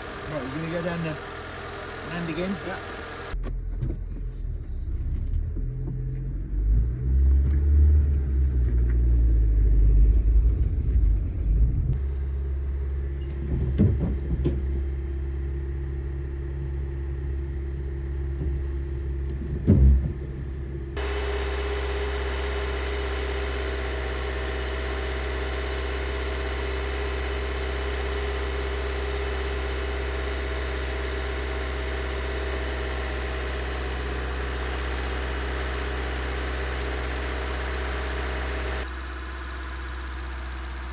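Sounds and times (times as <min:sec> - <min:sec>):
engine whine: 0:00.0 - 0:03.6, 0:20.9 - 0:40.9
engine knocks: 0:00.0 - 0:04.3
car engine rumbling: 0:00.0 - 0:12.0, 0:18.4 - 0:40.9.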